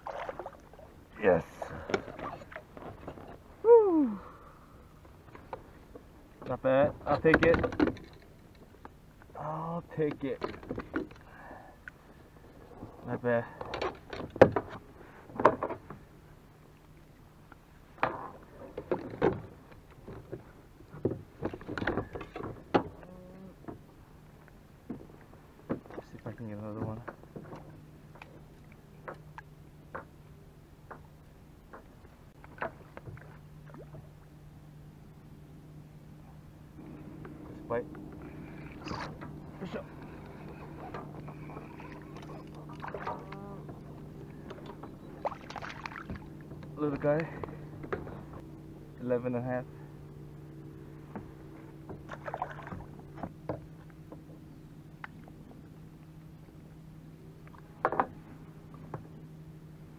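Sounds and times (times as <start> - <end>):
water splashes: 0.0 - 3.0, 32.3 - 34.3, 37.0 - 47.7, 51.9 - 53.4
steady low hum: 0.0 - 59.9.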